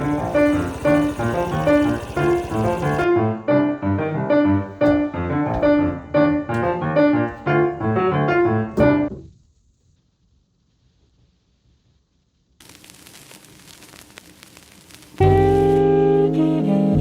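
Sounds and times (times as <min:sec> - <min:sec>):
piano music: 0:00.0 - 0:09.1
faint hiss: 0:09.2 - 0:16.0.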